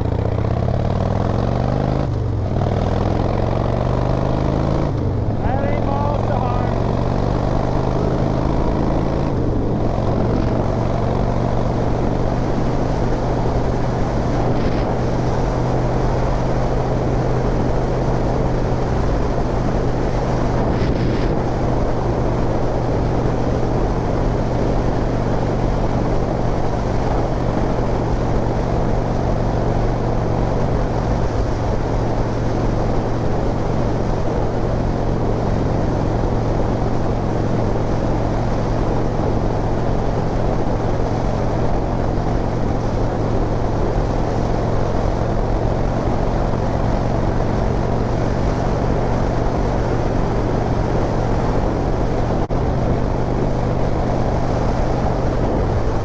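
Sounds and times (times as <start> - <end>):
motorcycle engine cruising: 0.0 - 56.0
wind noise: 0.0 - 56.0.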